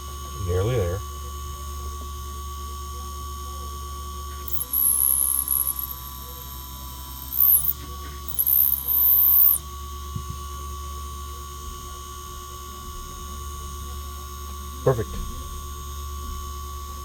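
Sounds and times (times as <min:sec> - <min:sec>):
small electric drill whining: 0:04.4 - 0:09.6.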